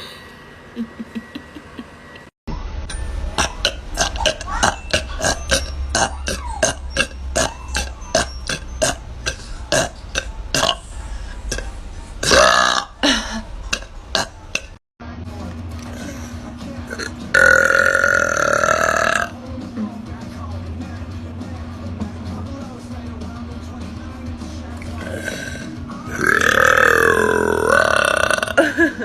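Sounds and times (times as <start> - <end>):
woman burping: 3.4 - 10.9, 11.5 - 14.8, 17.0 - 19.3, 26.2 - 29.0.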